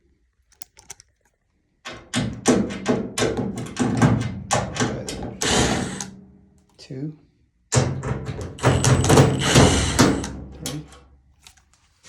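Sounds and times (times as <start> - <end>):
tool knocking and clicking on screw: 1.9 - 6.1, 7.8 - 10.8.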